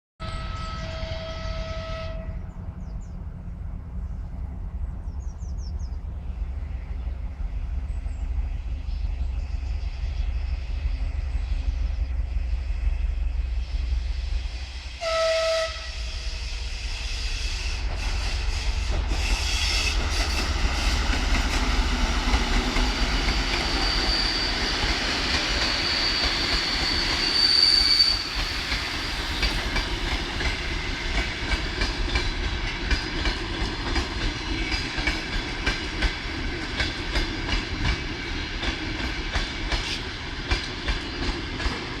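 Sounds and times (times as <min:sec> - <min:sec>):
train horn blast: 0:00.2 - 0:02.6, 0:14.9 - 0:21.0
locomotive rumble: 0:00.2 - 0:42.0
train rolling past: 0:00.2 - 0:42.0
thin high squeal: 0:23.6 - 0:28.5
wheels clacking over rail joints: 0:28.7 - 0:42.0.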